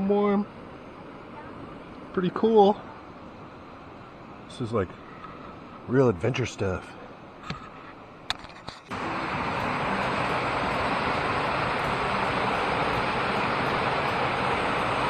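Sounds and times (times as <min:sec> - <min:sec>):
water rushing in cascades: 0:08.9 - 0:15.0.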